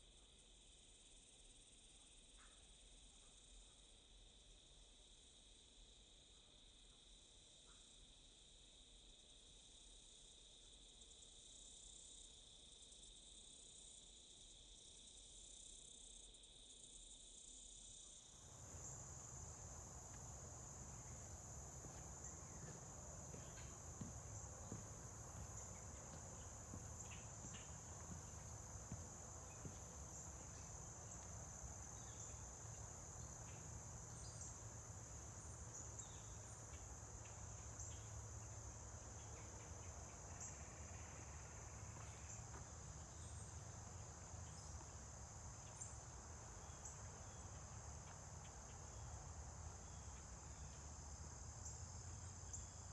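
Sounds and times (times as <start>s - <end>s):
insects chirring: 18.4s - 52.9s.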